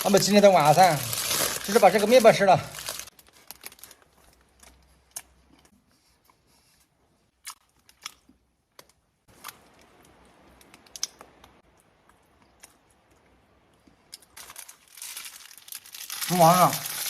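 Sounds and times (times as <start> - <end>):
plastic wrapper crinkling: 0.0 - 4.8, 14.2 - 17.0.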